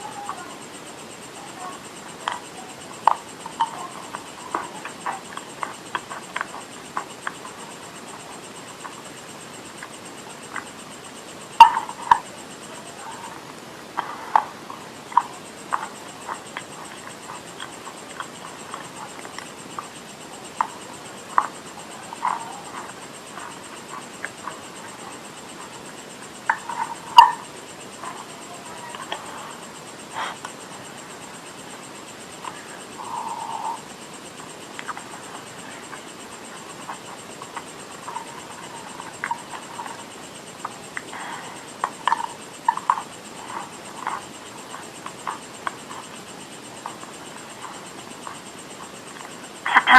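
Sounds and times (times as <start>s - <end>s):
wet chewing mouth clicks: 41.8s - 46.2s.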